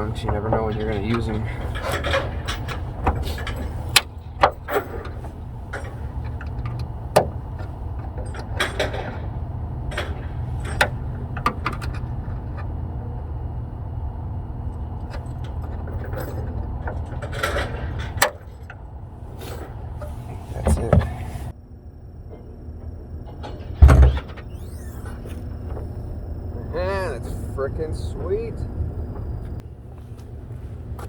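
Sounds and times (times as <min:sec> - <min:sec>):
low rumble: 0:09.3 - 0:31.0.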